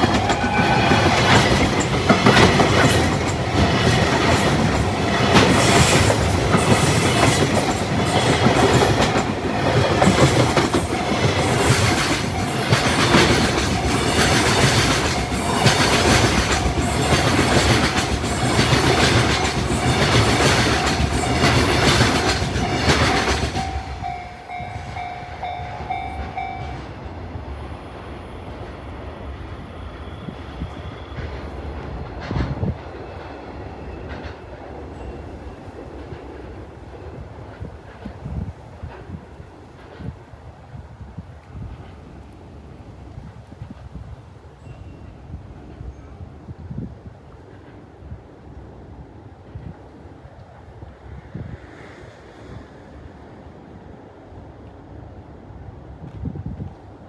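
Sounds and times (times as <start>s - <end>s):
wagon wheels clacking on rails: 0.0s - 27.0s
freight train rumbling past: 0.0s - 57.0s
level crossing warning bell: 6.6s - 27.1s.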